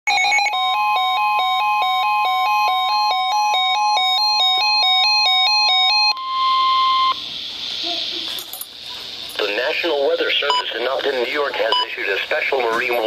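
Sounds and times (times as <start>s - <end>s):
steady warning tone: 0.4s - 7.2s.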